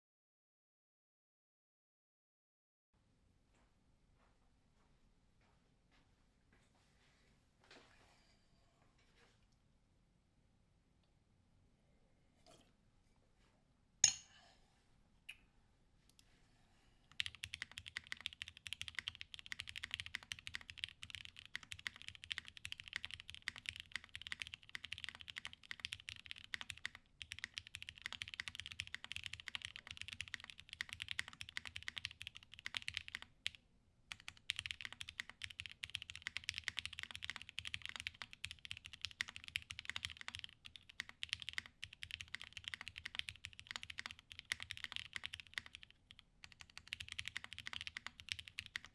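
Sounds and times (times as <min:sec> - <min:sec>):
mechanical keyboard typing: 0:17.1 - 0:48.9.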